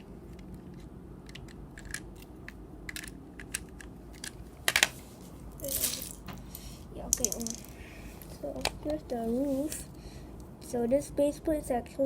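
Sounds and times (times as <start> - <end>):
plastic bricks clicking: 0.4 - 4.9, 7.1 - 7.8.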